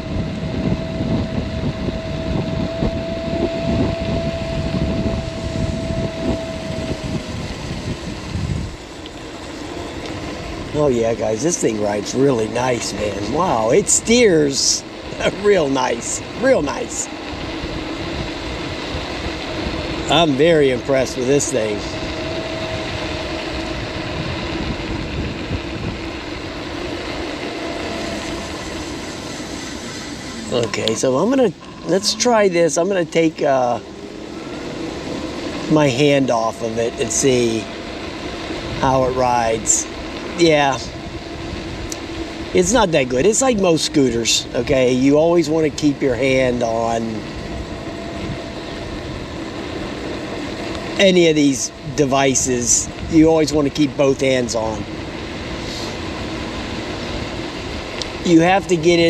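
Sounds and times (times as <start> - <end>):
electric motor whine: 0.0 - 59.0
wind buffeting microphone: 0.0 - 59.0.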